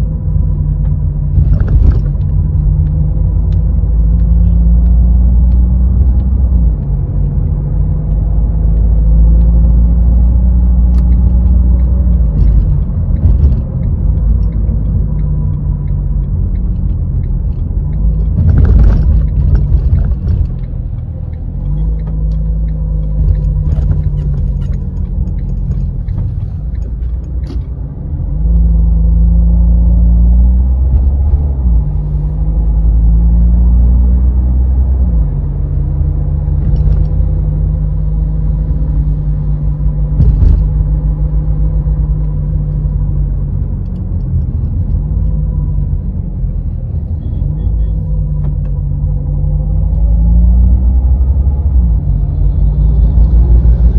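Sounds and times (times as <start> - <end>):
car engine and road rumble: 0.0 - 53.9.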